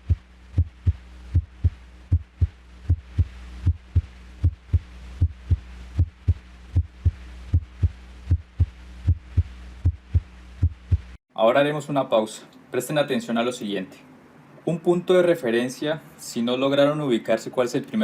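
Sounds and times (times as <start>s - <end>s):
heartbeat through stethoscope: 0.0s - 11.2s
faint low hum: 0.0s - 15.1s.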